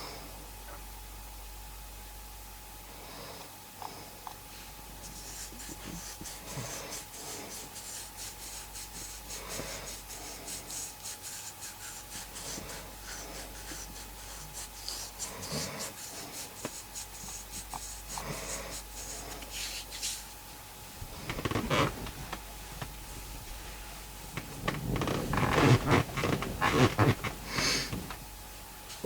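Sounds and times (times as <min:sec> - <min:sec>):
steady hum: 0:00.0 - 0:29.0
faint crackling: 0:21.0 - 0:29.0
person snoring: 0:24.4 - 0:28.1.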